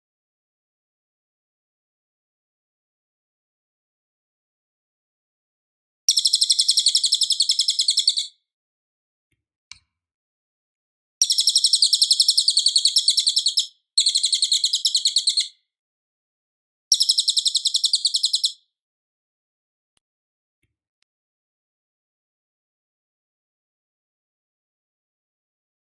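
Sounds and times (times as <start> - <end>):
bird high chirping song: 6.1 - 8.4, 11.2 - 15.6, 16.9 - 18.6.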